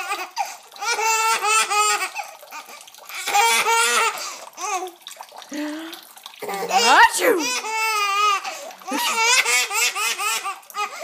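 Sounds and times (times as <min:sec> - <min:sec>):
baby laughing: 0:06.4 - 0:11.0.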